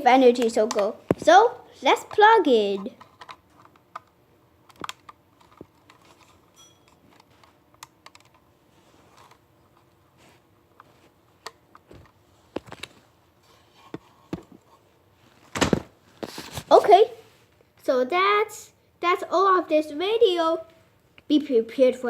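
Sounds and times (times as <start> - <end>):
plastic parts clicking: 2.1 - 6.4, 7.1 - 8.4.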